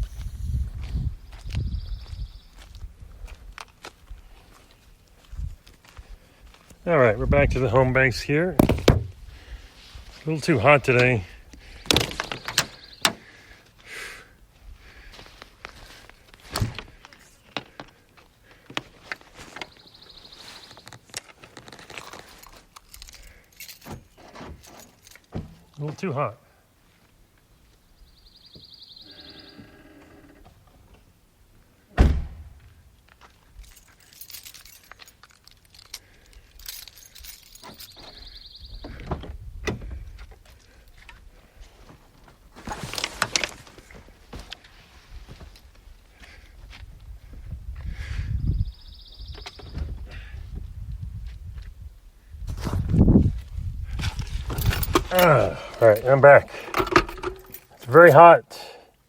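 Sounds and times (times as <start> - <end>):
light jingling: 22.0 - 25.8, 33.4 - 38.7
rustling: 41.6 - 45.8.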